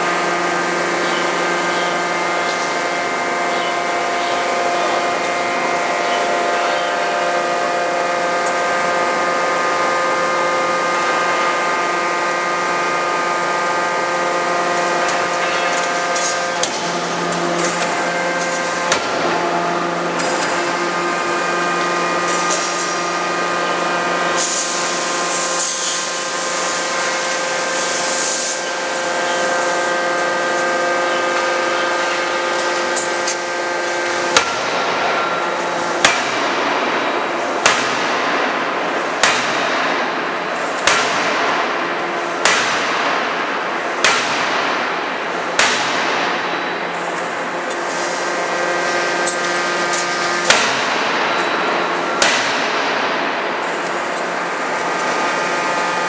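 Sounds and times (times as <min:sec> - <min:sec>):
steady machine hum: 0:00.0 - 0:56.0
forging hammer striking metal: 0:34.3 - 0:47.4, 0:50.4 - 0:53.9.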